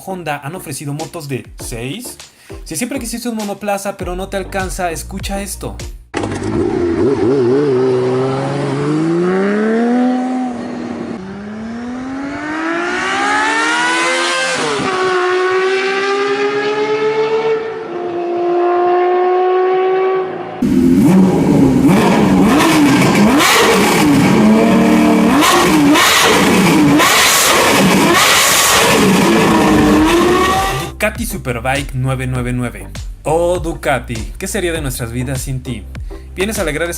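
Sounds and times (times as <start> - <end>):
motorcycle engine revving: 6.1 - 30.9.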